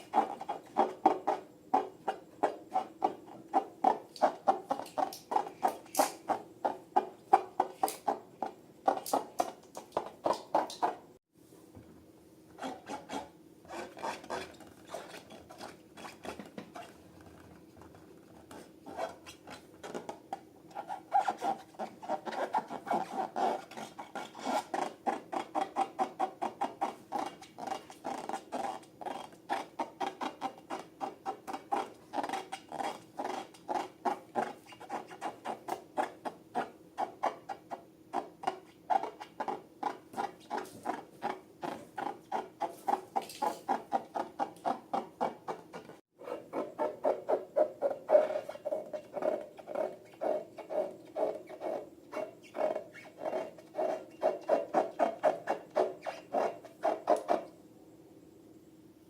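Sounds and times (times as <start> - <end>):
slime and balloons squeaking: 12.6 - 16.9, 20.8 - 36.2, 45.7 - 57.4.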